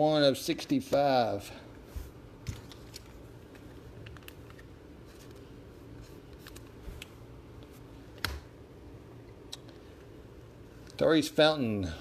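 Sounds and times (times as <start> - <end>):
low steady hum: 0.0 - 12.0
trading cards being handled: 1.8 - 8.5.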